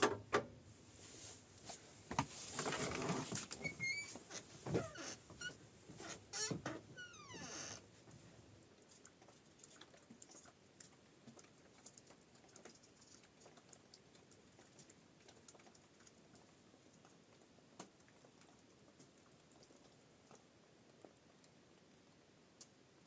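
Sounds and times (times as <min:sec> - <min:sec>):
faint small clicks and ticks: 0:08.8 - 0:21.9, 0:22.5 - 0:22.8.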